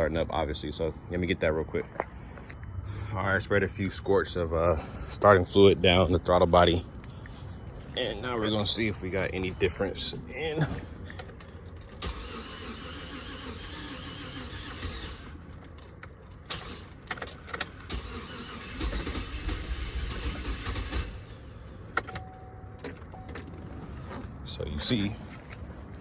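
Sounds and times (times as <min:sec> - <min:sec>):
engine cranking on starter: 0:11.2 - 0:22.2.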